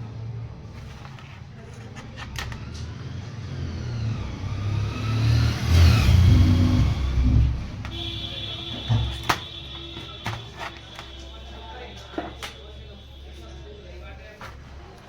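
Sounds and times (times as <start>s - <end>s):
vehicle engine passing by: 2.8s - 7.8s.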